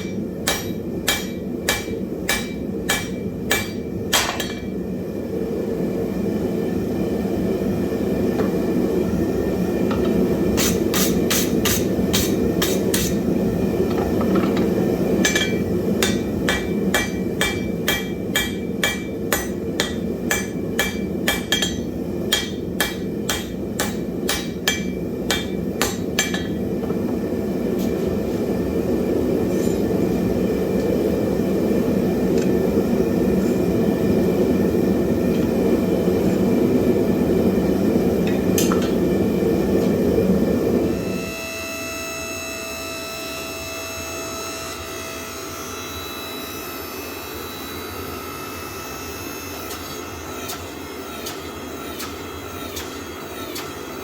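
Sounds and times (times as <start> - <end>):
hammer striking iron on anvil: 0.0 - 4.8, 9.9 - 13.2, 15.2 - 26.7, 38.3 - 39.0, 49.7 - 53.9.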